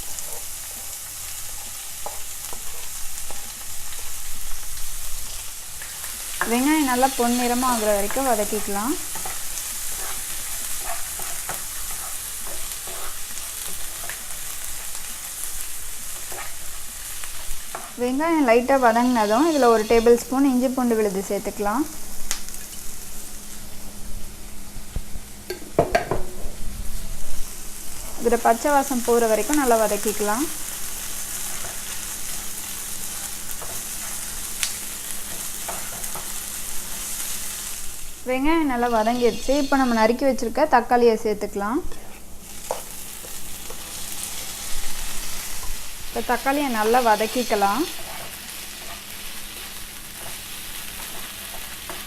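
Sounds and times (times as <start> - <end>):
onions sizzling in oil: 0.0 - 52.0
spatula scraping pan: 6.3 - 20.3, 38.8 - 40.2, 41.9 - 52.0.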